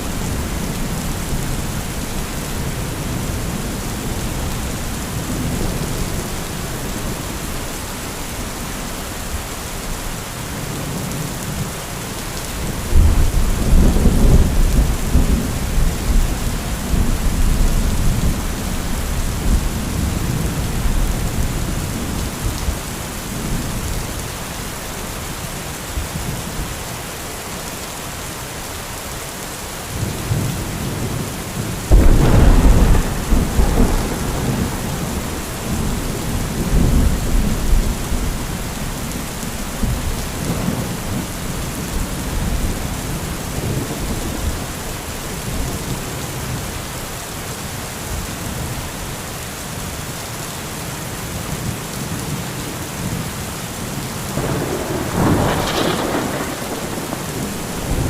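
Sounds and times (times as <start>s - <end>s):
heavy rain falling: 0.0s - 58.0s
thunder rumbling and clapping: 31.9s - 39.0s, 54.4s - 58.0s.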